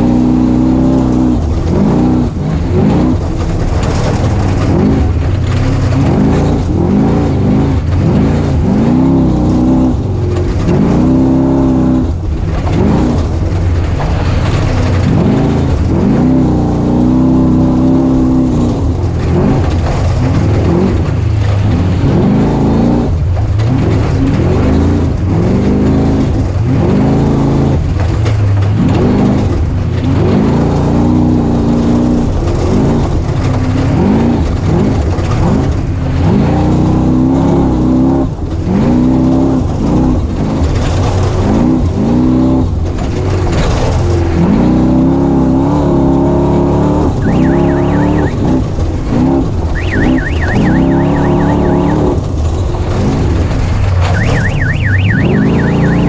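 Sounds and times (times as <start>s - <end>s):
dirt bike engine revving: 43.6s - 56.0s.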